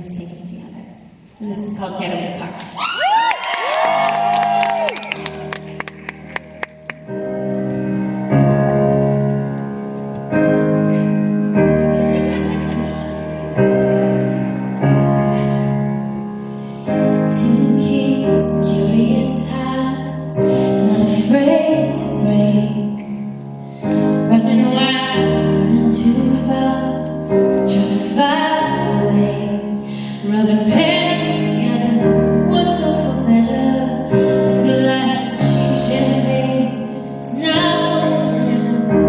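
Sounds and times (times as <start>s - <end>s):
piano ballad: 3.0s - 39.0s
woman singing: 17.3s - 23.0s, 24.3s - 27.0s, 27.6s - 39.0s.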